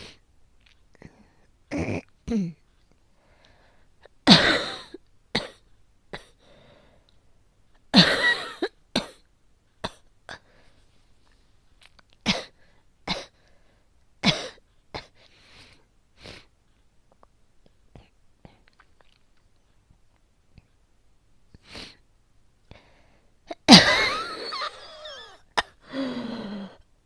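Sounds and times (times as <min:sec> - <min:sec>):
woman coughing: 0:04.3 - 0:05.6, 0:07.9 - 0:09.2, 0:14.2 - 0:15.1, 0:23.5 - 0:25.9.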